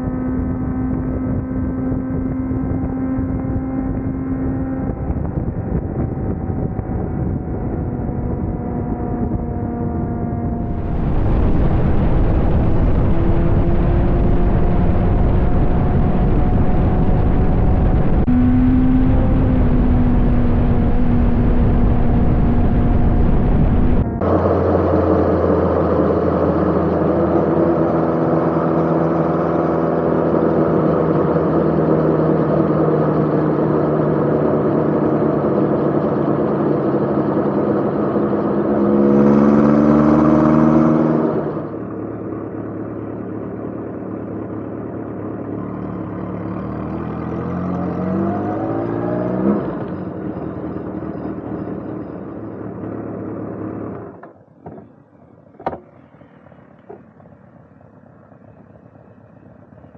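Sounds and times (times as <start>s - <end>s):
motorcycle engine running: 0.0s - 39.7s, 40.5s - 48.6s, 49.7s - 59.9s.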